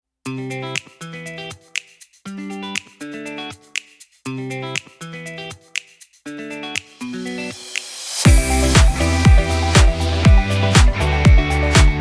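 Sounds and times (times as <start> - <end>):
plucked guitar chords: 8.3 - 12.0.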